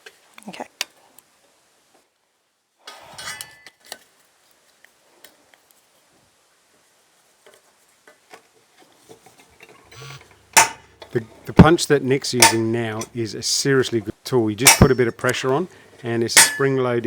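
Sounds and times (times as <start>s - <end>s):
metal ringing: 10.0s - 13.2s, 14.6s - 15.1s, 16.3s - 16.9s.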